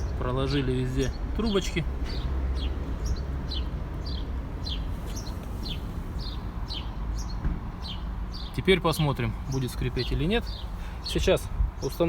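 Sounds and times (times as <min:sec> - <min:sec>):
small songbird chirping: 0:00.0 - 0:12.0.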